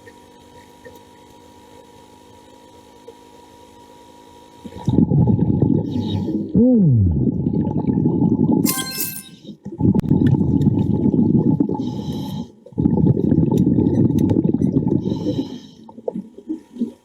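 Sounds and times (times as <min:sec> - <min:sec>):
diver exhaling bubbles: 0:04.8 - 0:08.6, 0:09.8 - 0:17.0.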